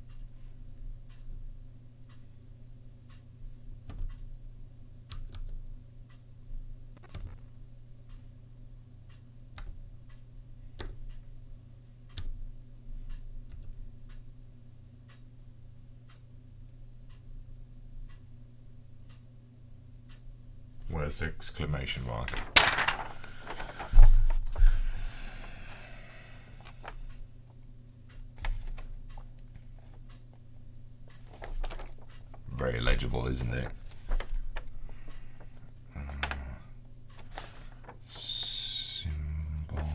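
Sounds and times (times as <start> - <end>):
steady low hum: 20.6 - 39.9.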